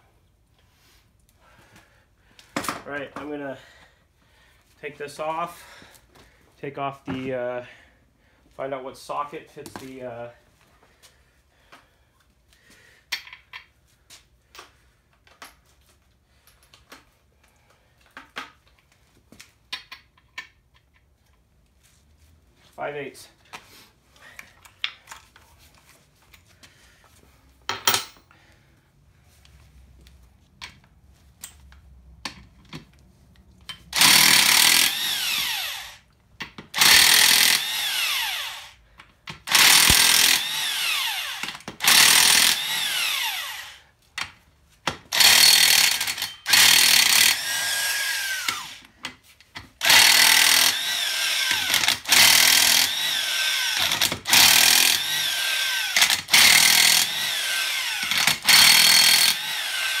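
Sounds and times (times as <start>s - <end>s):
impact wrench bursts: 33.9s - 36.1s, 36.7s - 43.8s, 45.0s - 48.9s, 49.6s - 60.0s.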